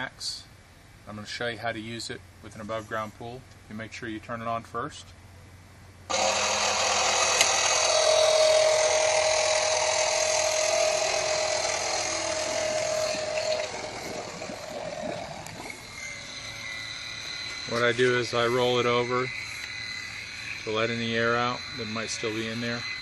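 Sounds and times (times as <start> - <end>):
pool vacuum motor whining: 6.1 - 23.0.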